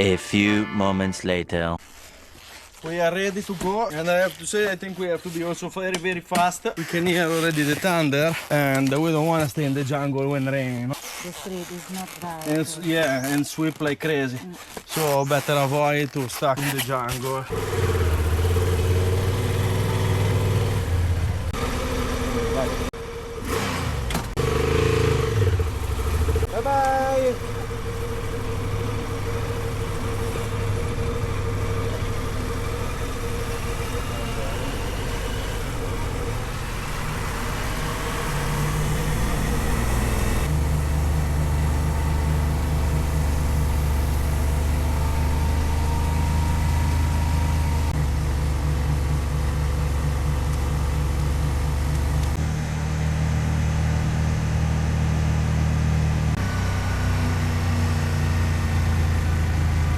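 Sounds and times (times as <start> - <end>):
motorcycle engine running: 17.5 - 59.9.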